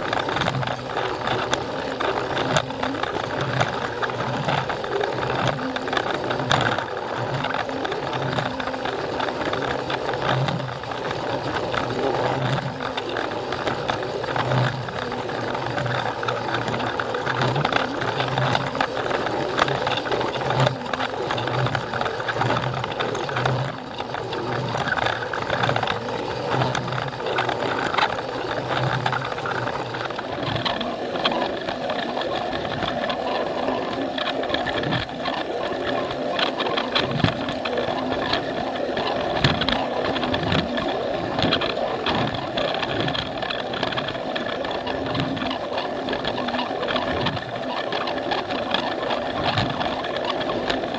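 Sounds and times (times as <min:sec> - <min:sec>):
toy train motor whirring: 0:00.0 - 0:50.9
wheels clicking over track joints: 0:00.0 - 0:50.9.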